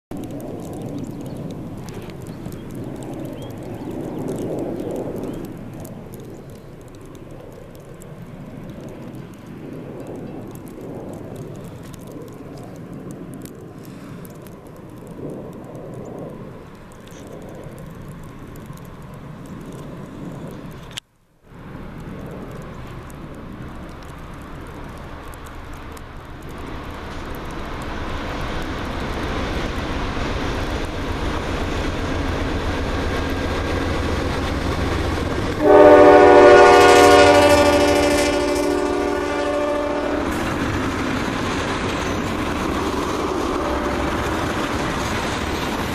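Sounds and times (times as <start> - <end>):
diesel locomotive engine rumble: 21.5 - 45.9
locomotive horn chord: 35.6 - 40.4.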